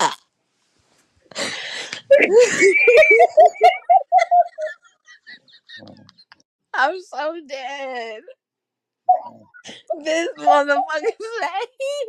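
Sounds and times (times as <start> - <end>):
woman laughing hard: 2.1 - 5.9.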